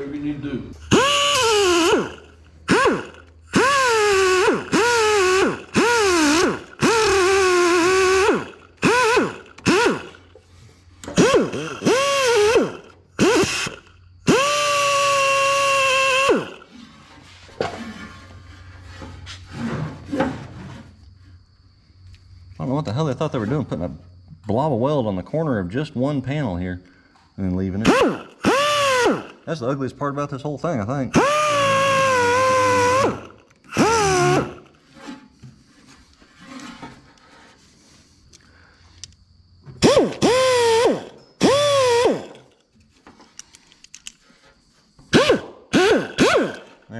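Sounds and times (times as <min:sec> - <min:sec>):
handheld grinder grinding metal: 0:00.8 - 0:10.2, 0:11.1 - 0:16.8, 0:27.8 - 0:29.4, 0:31.2 - 0:34.7, 0:39.8 - 0:42.6, 0:45.1 - 0:46.9.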